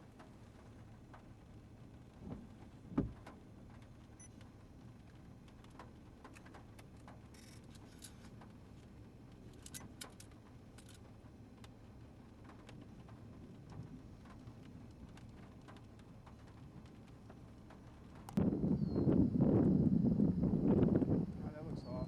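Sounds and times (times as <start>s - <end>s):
light clicks and ticks: 3.2s - 11.8s, 12.4s - 18.4s
faint low rumble: 8.3s - 22.0s.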